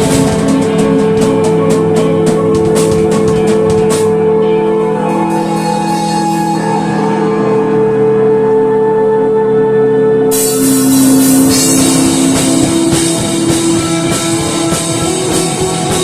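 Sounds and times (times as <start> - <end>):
drum beat: 0.0 - 4.2, 10.4 - 16.0
sustained held music notes: 0.0 - 16.0.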